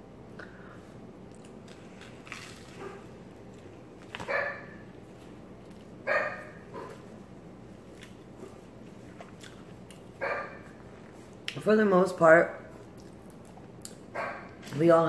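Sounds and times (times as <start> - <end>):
dog barking: 4.2 - 4.8, 6.1 - 7.0, 10.2 - 10.7, 14.2 - 14.6.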